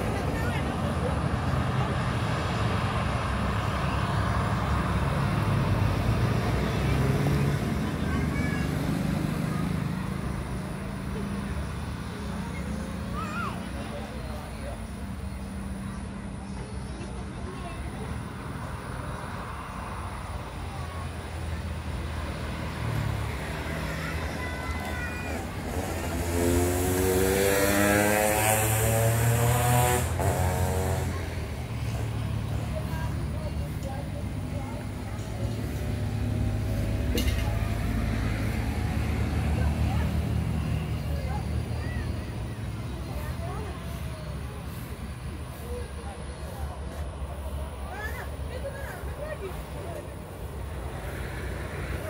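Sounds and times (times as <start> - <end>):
airplane engines roaring: 0.0 - 52.0.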